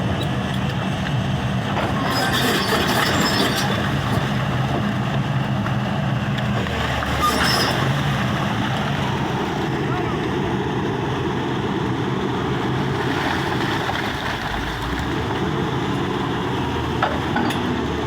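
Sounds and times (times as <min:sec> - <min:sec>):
excavator diesel engine running: 0:00.0 - 0:18.0
metallic scraping squeal: 0:01.8 - 0:04.3, 0:07.0 - 0:08.2.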